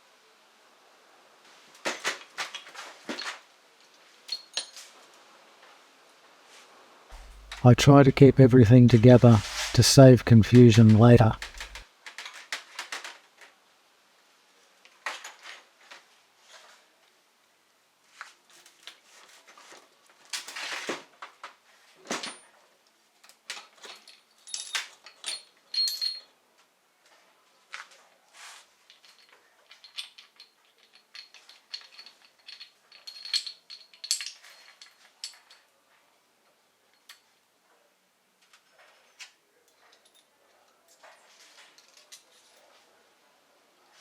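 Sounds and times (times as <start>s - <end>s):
metal engine parts clinking: 11.2s - 11.8s.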